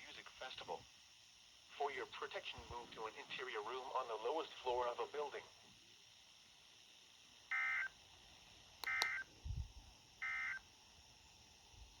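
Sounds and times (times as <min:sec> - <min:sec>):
sharp clicks: 0:08.8 - 0:09.2.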